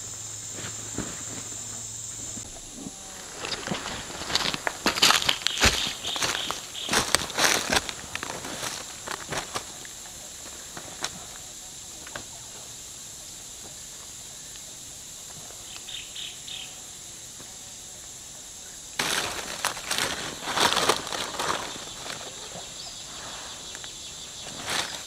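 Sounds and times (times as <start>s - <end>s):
insects droning: 0.0s - 25.0s
rustling and crunching of leaves: 0.4s - 12.4s, 19.0s - 25.0s.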